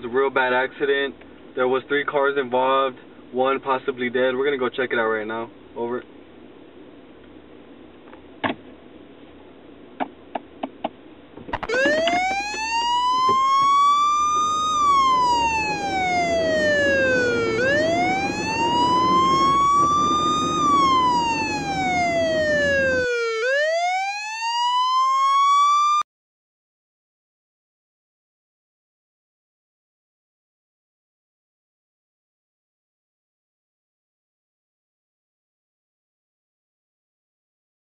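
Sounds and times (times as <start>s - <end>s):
low rumble: 11.6s - 23.1s
police siren wailing: 11.6s - 26.0s.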